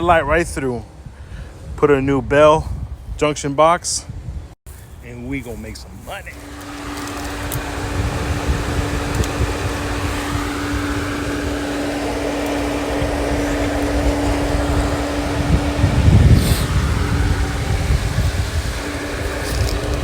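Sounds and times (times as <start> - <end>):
motor humming: 4.7 - 20.0.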